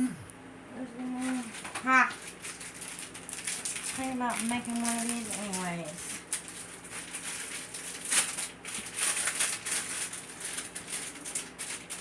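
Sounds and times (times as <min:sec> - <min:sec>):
rustling of craft items: 0:02.4 - 0:12.0.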